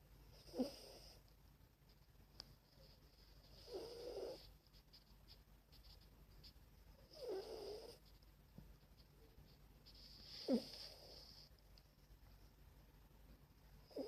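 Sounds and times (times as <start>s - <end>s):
dog snoring: 0.4s - 1.2s, 3.6s - 4.5s, 7.0s - 8.0s, 10.3s - 11.4s.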